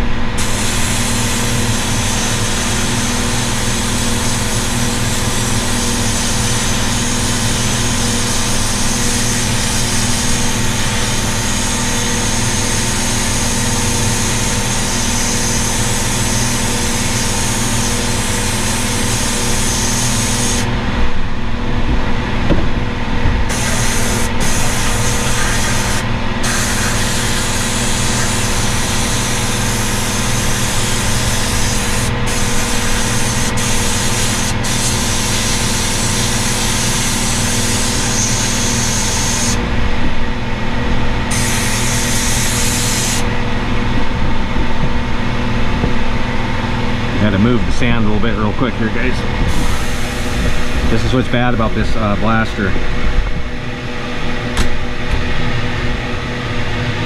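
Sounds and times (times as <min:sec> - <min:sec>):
machine hum: 0:00.0 - 0:57.0
sandblaster hissing: 0:00.4 - 0:20.7, 0:23.5 - 0:39.6, 0:41.3 - 0:43.3, 0:49.5 - 0:51.7.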